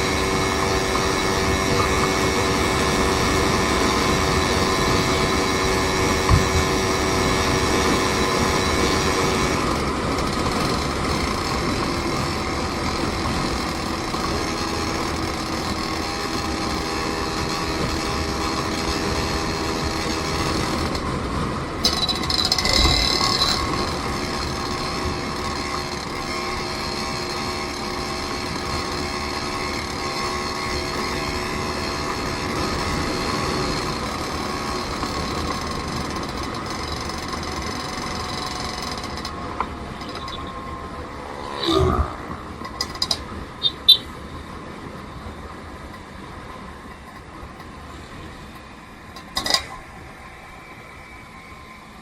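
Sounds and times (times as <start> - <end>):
vehicle engine running: 0.0 - 49.6
high-pitched squeal: 39.9 - 44.2.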